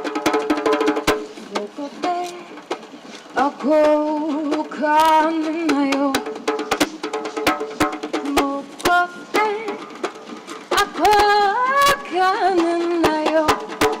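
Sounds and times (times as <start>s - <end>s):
sharp drum strokes: 0.0s - 14.0s
woman singing long wavering notes: 3.4s - 6.3s, 8.2s - 9.9s, 10.7s - 13.7s.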